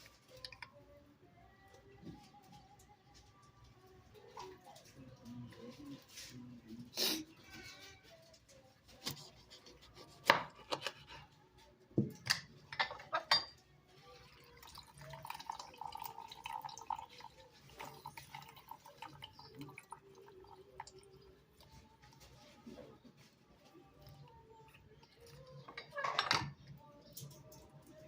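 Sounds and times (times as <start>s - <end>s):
dishes and utensils clattering: 12.0s - 20.0s, 25.2s - 27.7s.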